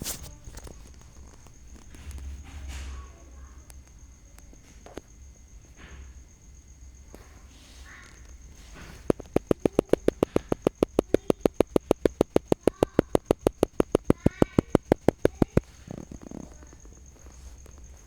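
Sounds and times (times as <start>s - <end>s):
fast sharp clicks: 8.9s - 16.4s.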